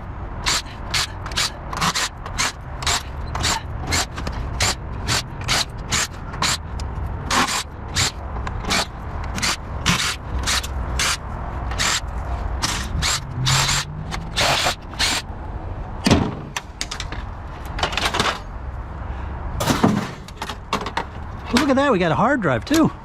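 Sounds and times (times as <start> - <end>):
ratcheting hand tool clicking: 0.4 - 15.3.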